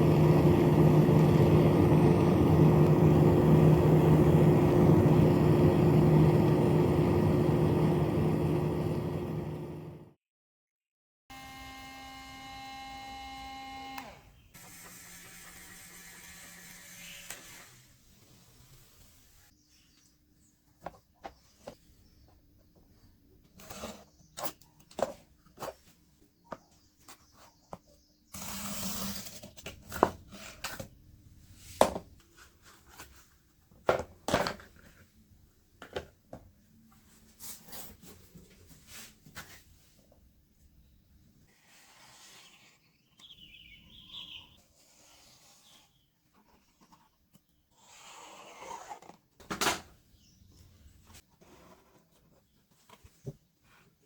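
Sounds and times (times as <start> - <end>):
small electric motor humming: 0.0 - 10.0, 11.3 - 18.0.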